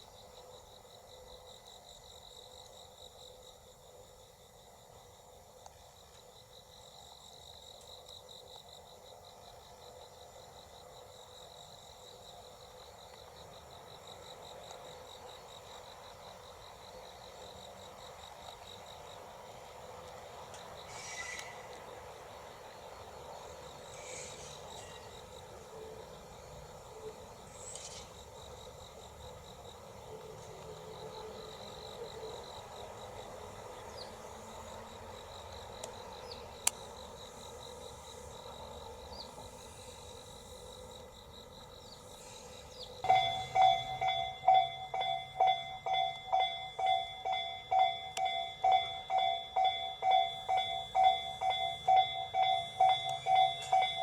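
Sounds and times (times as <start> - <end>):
insects chirping: 0.0 - 54.0
level-crossing warning bell ringing: 43.0 - 54.0.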